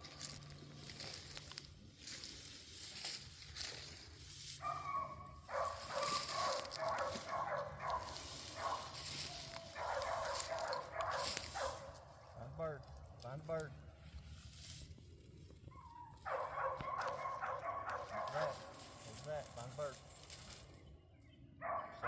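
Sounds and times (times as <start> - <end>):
dogs whining and yelping: 15.6 - 18.4.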